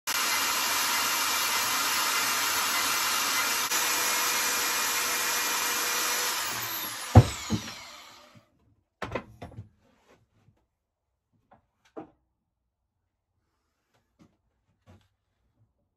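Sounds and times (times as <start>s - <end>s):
electric motor whining: 0.1s - 8.3s.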